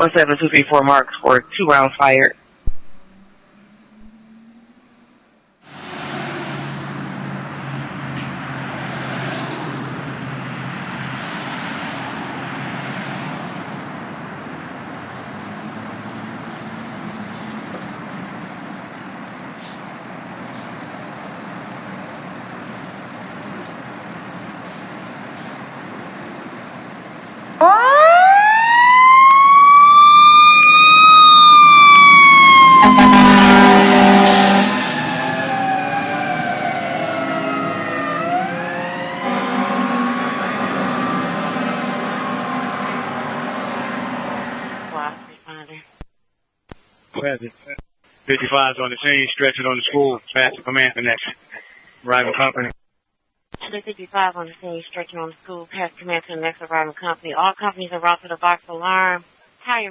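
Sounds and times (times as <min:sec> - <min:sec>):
fire engine rumble and road noise: 0:02.5 - 0:45.4
siren wailing: 0:03.1 - 0:05.1, 0:26.1 - 0:45.3
deep horn blast: 0:29.2 - 0:45.3.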